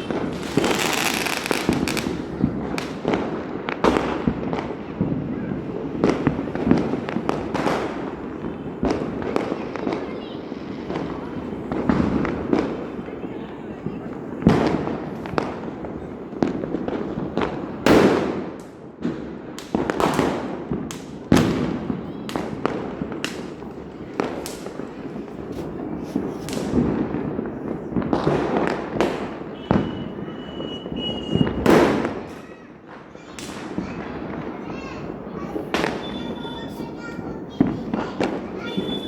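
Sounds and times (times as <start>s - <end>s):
firecrackers banging: 0.0s - 39.0s
high whistle: 29.7s - 31.6s, 38.8s - 39.0s.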